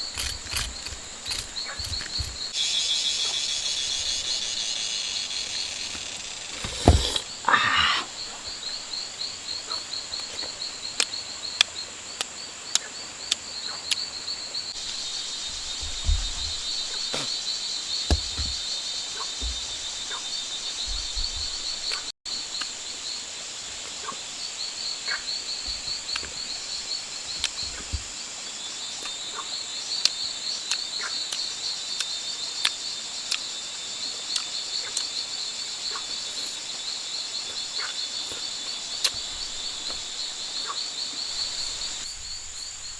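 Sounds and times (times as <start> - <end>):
insects trilling: 0.0 - 42.9
low thuds: 14.8 - 17.4.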